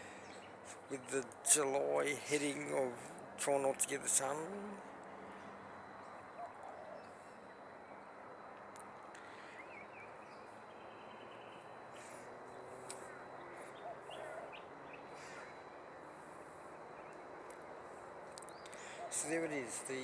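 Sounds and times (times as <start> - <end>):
steady background hiss: 0.0 - 20.0
faint bird chirps: 4.5 - 20.0.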